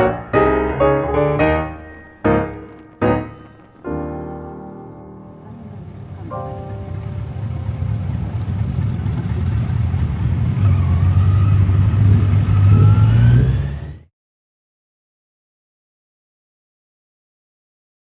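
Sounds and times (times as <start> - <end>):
piano notes: 0.0 - 10.5
motorcycle engine accelerating: 5.5 - 14.1.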